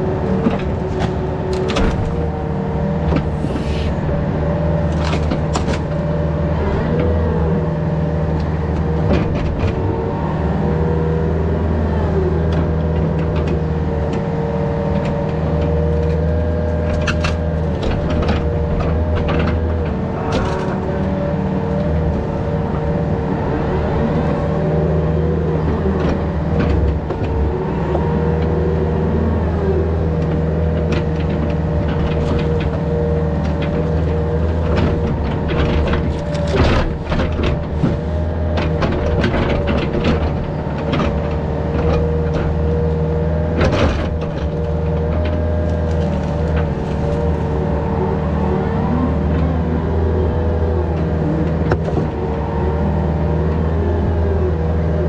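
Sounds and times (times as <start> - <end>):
excavator diesel engine running: 0.0 - 55.0
knocks and clanks: 0.3 - 2.4, 30.7 - 42.8.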